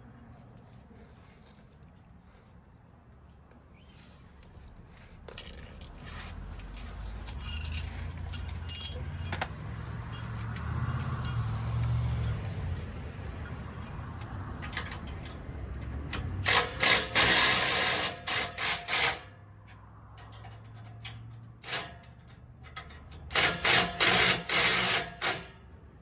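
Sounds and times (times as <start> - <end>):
power tool bursts: 16.4 - 19.2, 23.3 - 25.5.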